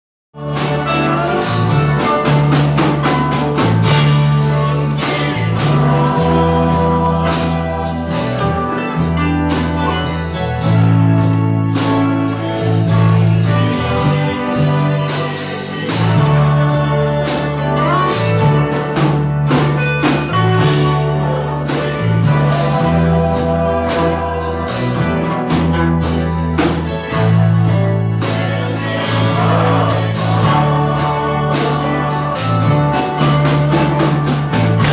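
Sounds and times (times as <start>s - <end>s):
bass line: 0.3s - 34.9s
guitar: 0.3s - 34.9s
person singing: 0.4s - 10.4s, 12.3s - 26.9s, 28.2s - 34.9s
drums: 0.4s - 34.9s.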